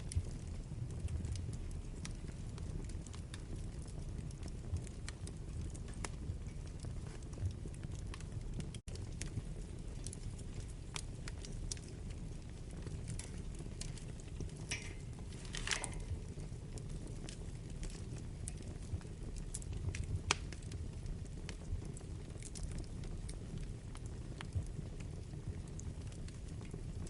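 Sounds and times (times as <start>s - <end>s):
fire crackling and popping: 0.0s - 27.0s
fire rumbling: 0.0s - 27.0s
fire hissing: 10.6s - 19.4s.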